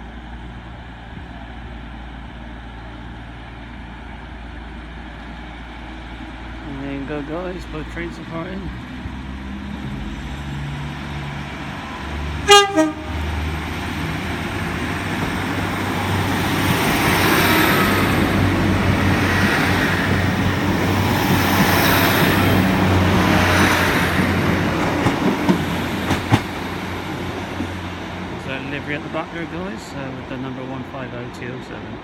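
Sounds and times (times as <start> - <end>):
diesel train pulling away: 0.0 - 32.0
train horn toot: 12.4 - 13.4.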